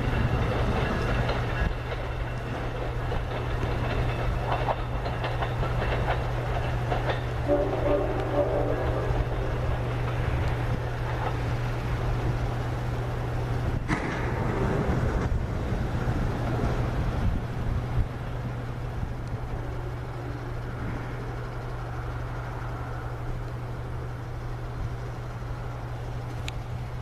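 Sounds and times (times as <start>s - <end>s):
train rumbling on rails: 0.0s - 27.0s
train horn chord: 7.4s - 9.7s.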